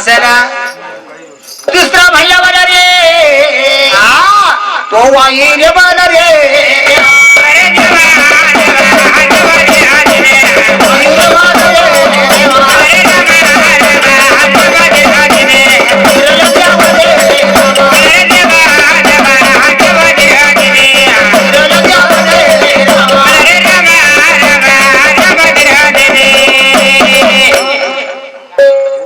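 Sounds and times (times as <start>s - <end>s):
fast rattling percussion: 1.4s - 2.4s, 6.6s - 28.1s
person singing folk song: 5.6s - 29.0s.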